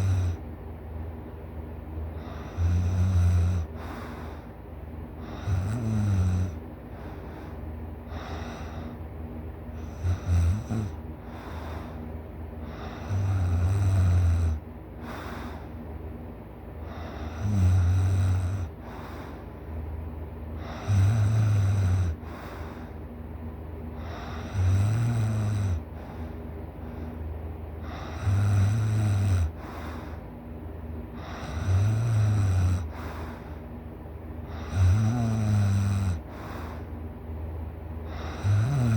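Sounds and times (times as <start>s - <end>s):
person snoring: 0.0s - 0.4s, 2.2s - 4.0s, 5.3s - 6.6s, 9.8s - 11.6s, 12.7s - 15.3s, 16.9s - 19.1s, 20.6s - 22.7s, 24.0s - 26.2s, 27.8s - 30.1s, 31.2s - 33.4s, 34.5s - 36.8s, 38.1s - 38.9s.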